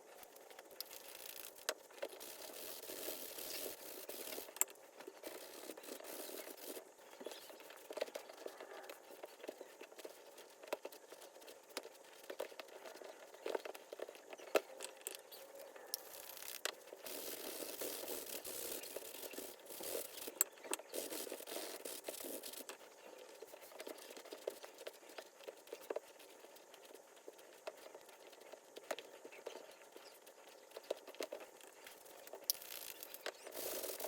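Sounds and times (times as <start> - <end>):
rubbing on leather: 5.2 - 13.2, 16.0 - 22.9, 23.5 - 34.0.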